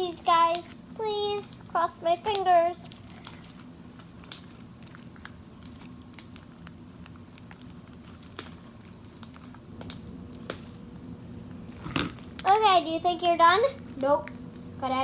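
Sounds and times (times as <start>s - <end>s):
low background hum: 0.0s - 15.0s
slime squished by hand: 2.1s - 12.6s.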